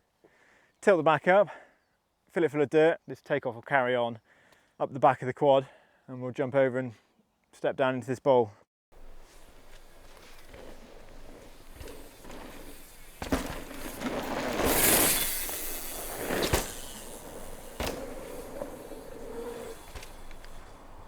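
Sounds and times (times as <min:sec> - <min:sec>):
bike knocking on ground: 0:09.0 - 0:21.0
bike tyres rushing over dirt: 0:09.0 - 0:21.0.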